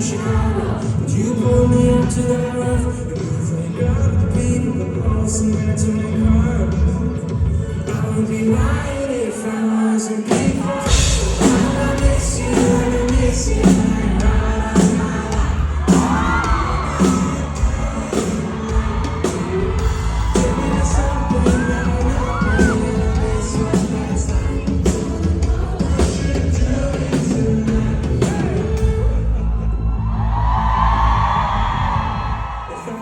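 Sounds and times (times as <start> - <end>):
heavy bass: 0.2 - 7.8, 10.9 - 32.7
live pop-rock band playing: 10.3 - 29.4
drum beat: 10.4 - 29.0
people yelling and whooping: 12.5 - 24.9, 28.2 - 33.0.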